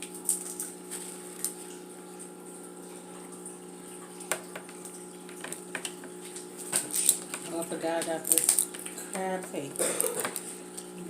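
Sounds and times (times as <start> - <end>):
steady background hum: 0.0 - 11.0
wet clicks and smacks of eating: 4.3 - 9.0.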